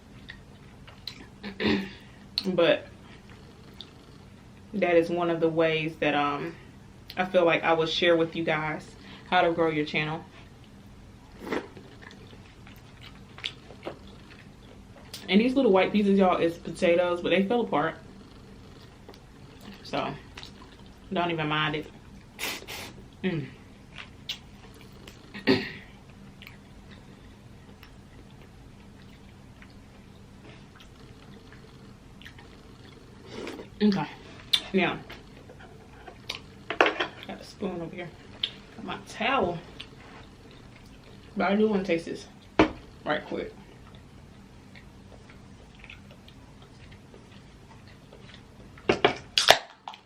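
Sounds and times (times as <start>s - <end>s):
person chewing food: 0.0s - 1.4s, 10.4s - 15.2s, 18.0s - 21.1s, 23.8s - 37.3s, 38.2s - 38.8s, 39.6s - 41.4s, 43.6s - 50.0s.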